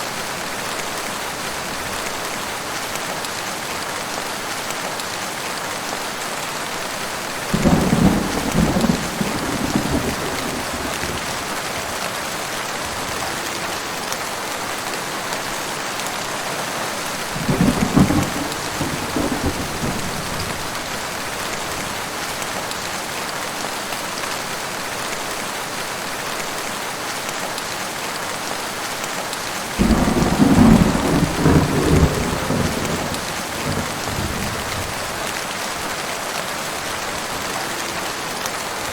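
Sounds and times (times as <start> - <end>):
heavy rain falling: 0.0 - 38.9
thunder rolling: 7.5 - 11.6, 17.4 - 20.5, 29.8 - 35.1.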